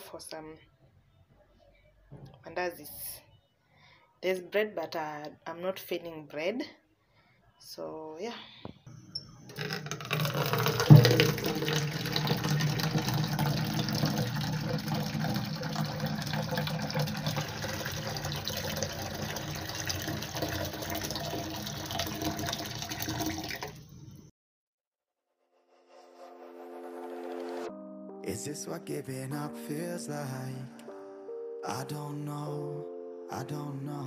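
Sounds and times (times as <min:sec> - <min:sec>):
water running: 0:09.5 - 0:24.3
knock: 0:10.6 - 0:11.7.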